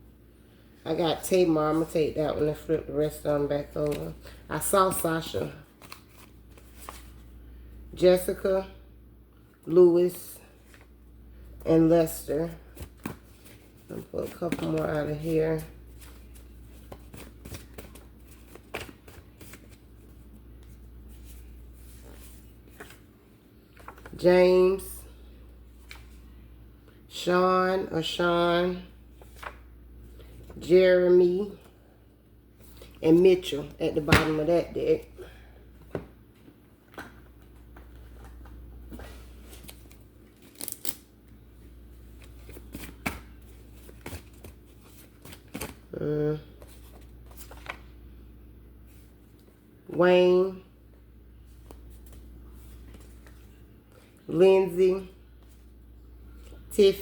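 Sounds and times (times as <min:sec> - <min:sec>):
low steady hum: 0:00.0 - 0:57.0
cards being shuffled: 0:05.7 - 0:07.2, 0:12.6 - 0:23.1, 0:23.7 - 0:24.2, 0:36.9 - 0:41.1, 0:42.1 - 0:45.8, 0:46.6 - 0:47.8.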